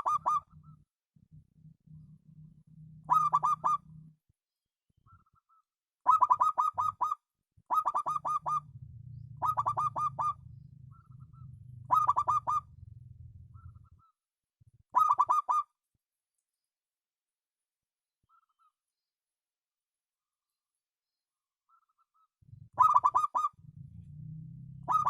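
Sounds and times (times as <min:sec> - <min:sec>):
dove cooing: 0:00.0 - 0:00.8, 0:01.9 - 0:04.1, 0:06.1 - 0:14.1, 0:14.9 - 0:15.7, 0:22.5 - 0:25.0.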